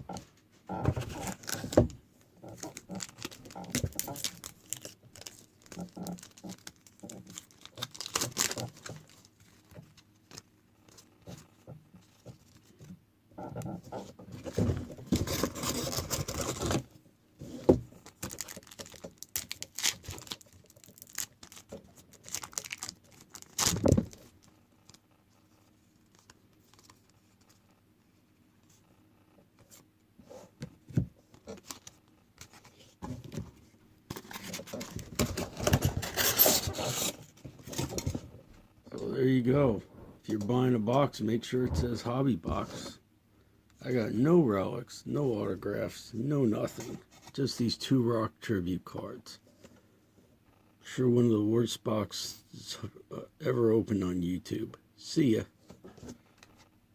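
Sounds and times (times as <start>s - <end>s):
foil wrappers tearing and crinkling: 2.6s - 9.6s, 15.1s - 16.8s, 18.0s - 25.0s.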